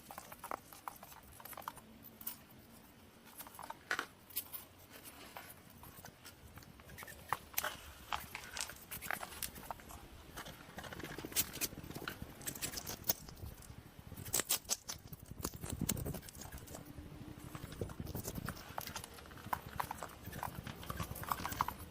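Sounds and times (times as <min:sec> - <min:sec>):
hedgehog clicking: 0:06.0 - 0:21.9
hedgehog squeaks: 0:06.7 - 0:07.5, 0:14.2 - 0:16.9, 0:17.5 - 0:21.9.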